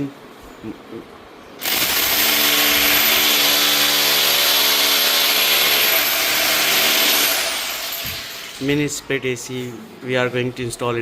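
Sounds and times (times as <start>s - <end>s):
power tool motor running: 1.6s - 8.6s.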